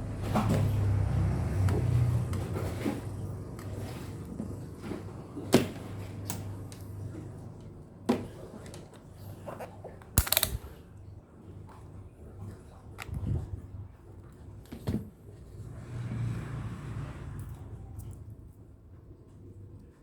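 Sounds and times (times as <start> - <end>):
small parts clicking and knocking: 10.2 - 10.7.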